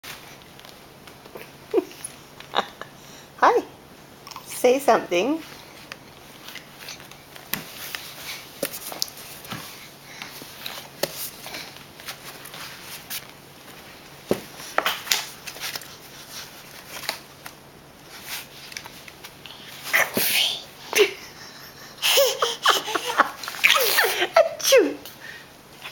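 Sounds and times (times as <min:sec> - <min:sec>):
person sniffing: 0:19.6 - 0:20.7.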